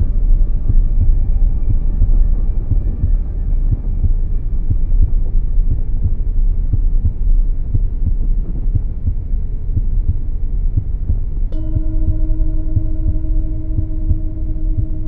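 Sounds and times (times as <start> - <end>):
heartbeat thumps: 0.0 - 15.0
low hum: 0.0 - 15.0.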